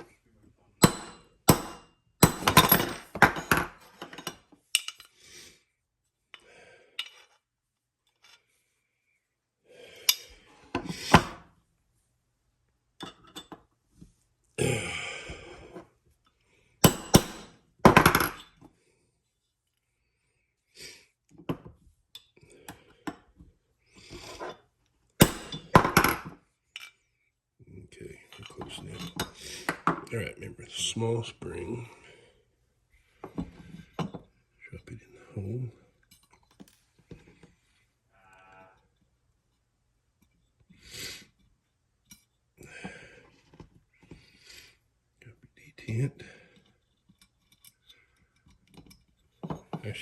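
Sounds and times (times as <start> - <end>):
hammer tapping metal punch: 0.8 - 3.5, 16.8 - 17.5, 25.2 - 26.1
tools clinking: 0.8 - 5.2, 7.0 - 7.4, 13.0 - 13.7, 16.8 - 18.6, 25.2 - 27.0, 28.3 - 30.1, 36.0 - 37.2, 42.0 - 42.4, 46.5 - 50.0.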